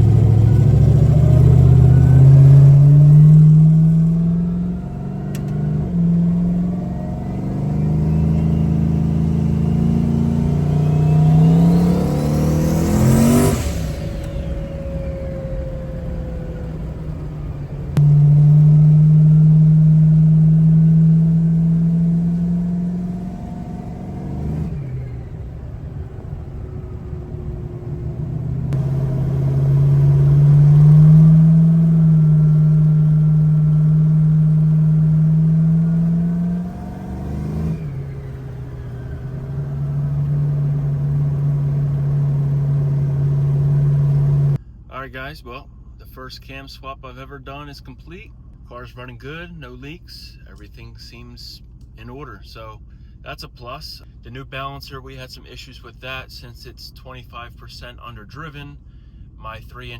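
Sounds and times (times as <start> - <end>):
turbocharged car engine running: 0.0 - 44.6.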